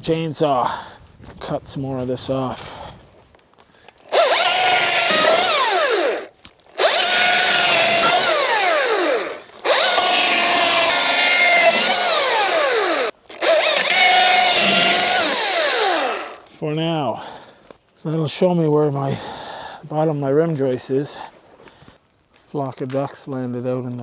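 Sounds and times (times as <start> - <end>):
chainsaw cutting wood: 4.0 - 16.5.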